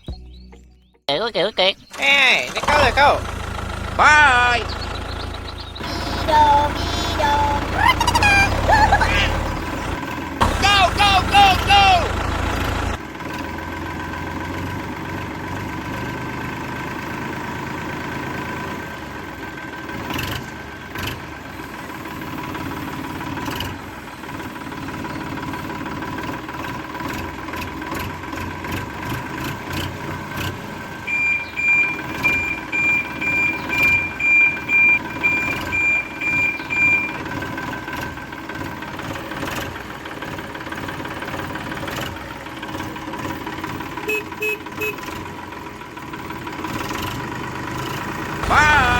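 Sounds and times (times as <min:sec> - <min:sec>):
toy electronic engine sound: 0:01.6 - 0:03.4, 0:04.0 - 0:05.1, 0:05.8 - 0:13.0, 0:48.4 - 0:48.9
reversing beeps: 0:31.1 - 0:37.4.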